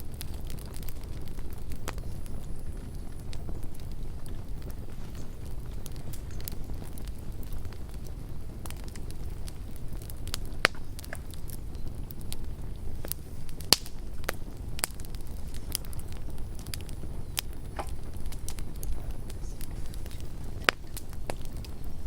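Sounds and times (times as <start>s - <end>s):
campfire crackling and popping: 0.0s - 22.0s.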